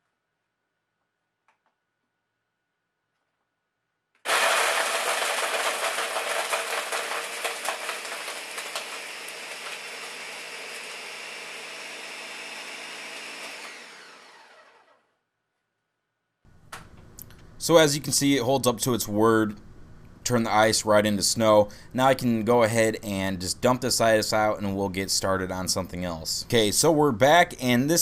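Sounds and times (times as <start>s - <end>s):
blender crushing ice: 4.3s - 15.1s.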